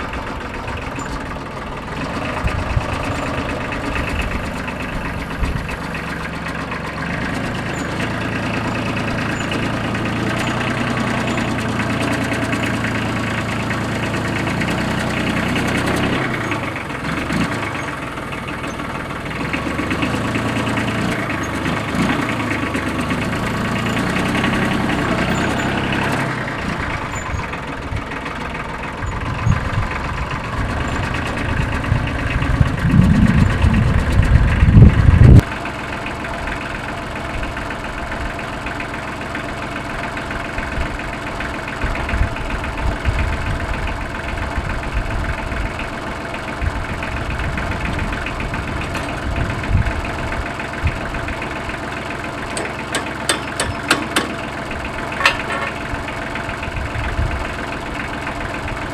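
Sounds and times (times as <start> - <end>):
low rumbling: 0.0 - 35.5
tractor engine running: 0.0 - 58.9.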